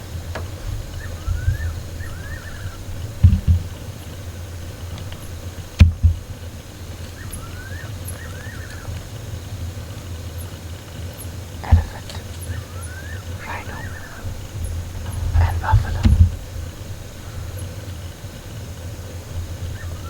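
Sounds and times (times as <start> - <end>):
bird calling: 0.0 - 9.2, 11.1 - 20.0
dull thumps: 0.4 - 6.5, 13.4 - 17.8
steady low hum: 10.9 - 20.0.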